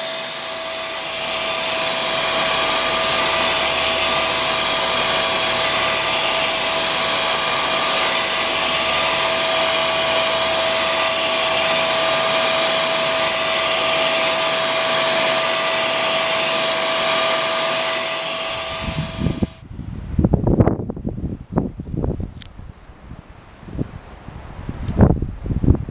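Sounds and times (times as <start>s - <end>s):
grinder whirring with whine: 0.0s - 19.6s.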